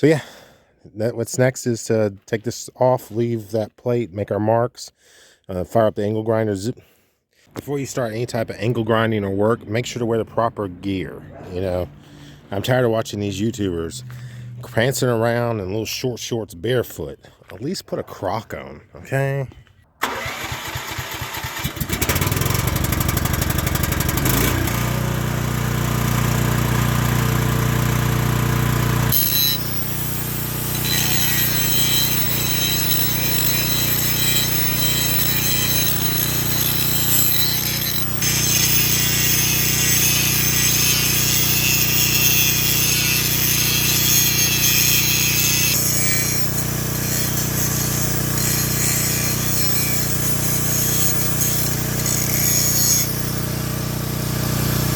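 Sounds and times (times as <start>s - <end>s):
angle grinder grinding steel: 28.7s - 54.2s.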